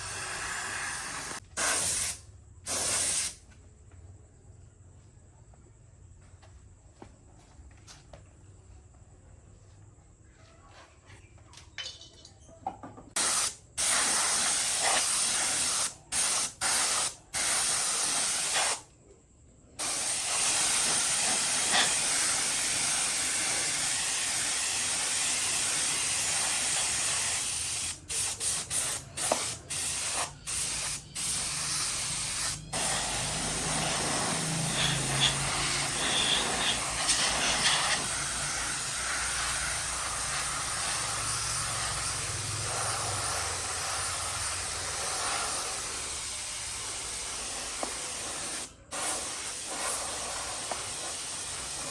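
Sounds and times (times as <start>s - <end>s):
spray gun hissing: 0.0s - 3.4s, 13.2s - 18.8s, 19.8s - 51.9s.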